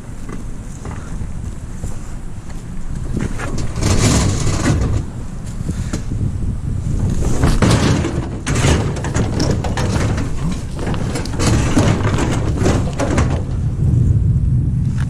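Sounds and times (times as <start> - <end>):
wind on microphone: 0.0 - 15.0
scrap metal knocks and clatter: 3.1 - 5.2, 7.0 - 13.7.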